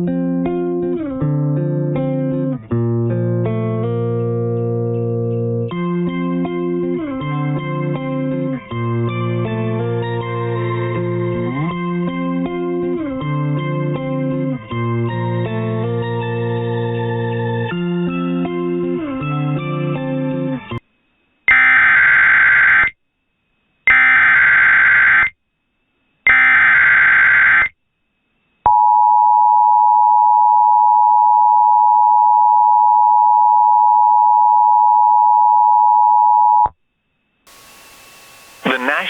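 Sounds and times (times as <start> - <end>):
guitar music: 0.0 - 14.7.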